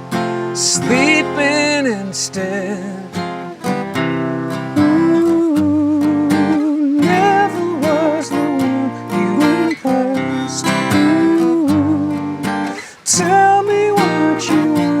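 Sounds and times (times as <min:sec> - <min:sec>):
acoustic guitar strumming: 0:00.0 - 0:15.0
man singing: 0:00.5 - 0:03.8, 0:04.7 - 0:15.0.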